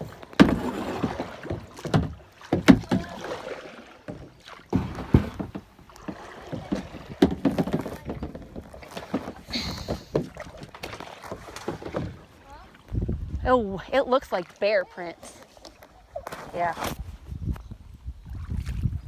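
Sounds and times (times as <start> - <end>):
kayak scraping: 0.0 - 17.6
hollow knocks on plastic kayak: 0.2 - 3.3, 4.1 - 12.3.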